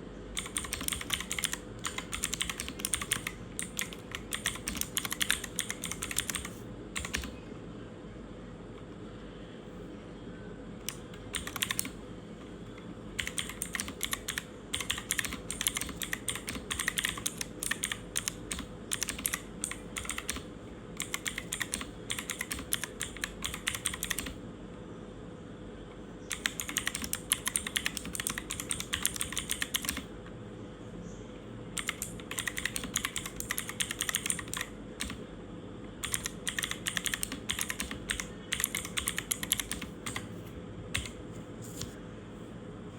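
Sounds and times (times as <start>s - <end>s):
mechanical keyboard typing: 0.4s - 7.4s, 10.8s - 12.0s, 13.2s - 24.4s, 26.3s - 30.1s, 31.8s - 35.2s, 36.0s - 40.3s, 40.9s - 41.2s.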